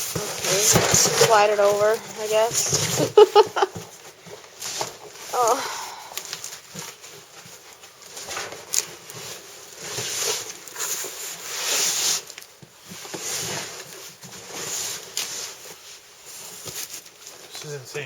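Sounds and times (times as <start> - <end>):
cardboard boxes rustling and scraping: 0.0 - 18.0.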